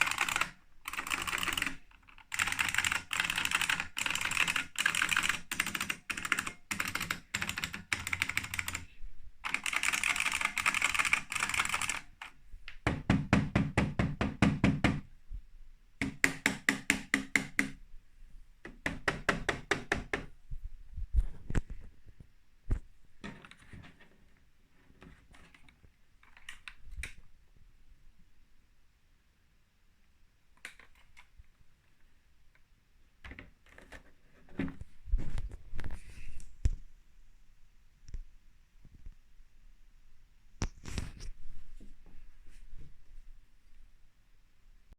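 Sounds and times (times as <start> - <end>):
keyboard keys clicking typing: 0.0 - 13.0.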